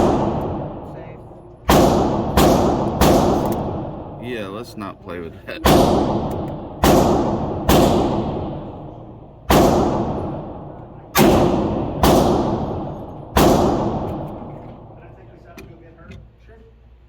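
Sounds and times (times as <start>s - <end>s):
pistol shots with echo: 0.0s - 1.0s, 1.6s - 4.2s, 5.6s - 15.0s.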